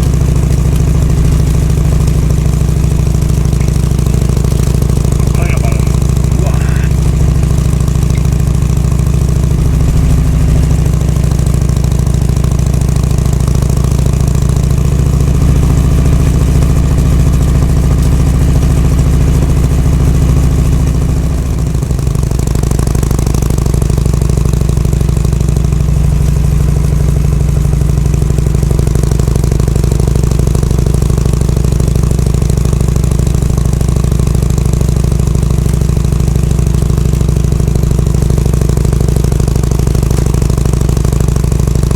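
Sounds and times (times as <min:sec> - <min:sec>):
motorcycle engine running: 0:00.0 - 0:41.9.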